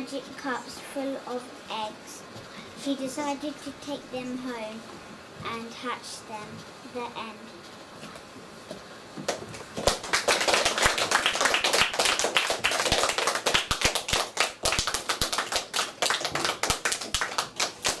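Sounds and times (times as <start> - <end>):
group of people clapping: 9.3 - 18.0.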